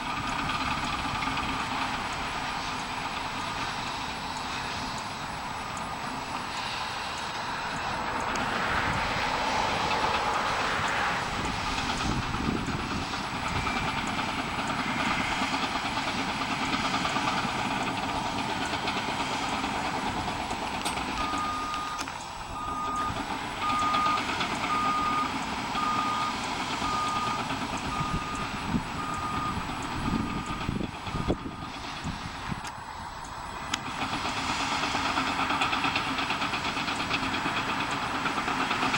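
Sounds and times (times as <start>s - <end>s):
construction machine running: 0.0s - 38.9s
backup alarm beeping: 21.2s - 22.0s, 22.6s - 31.7s.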